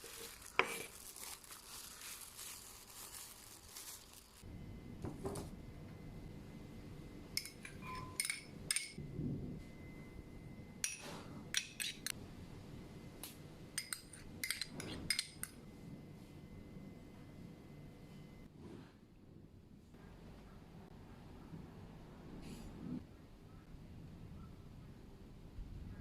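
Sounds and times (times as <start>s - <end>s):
utensils and dishes clinking: 7.4s - 9.0s, 10.8s - 12.1s, 13.8s - 15.6s.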